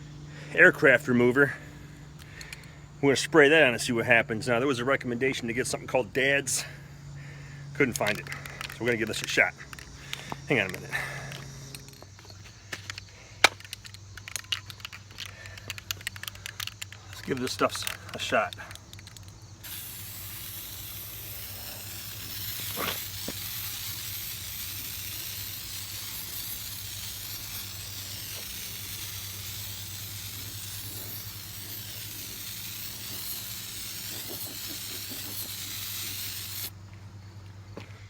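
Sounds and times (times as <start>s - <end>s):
spray can hissing: 7.8s - 36.8s.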